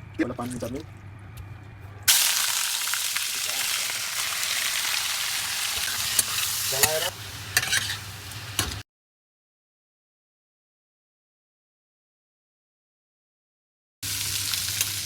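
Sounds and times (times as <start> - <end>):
food sizzling in hot oil: 2.1 - 8.8, 14.0 - 15.0.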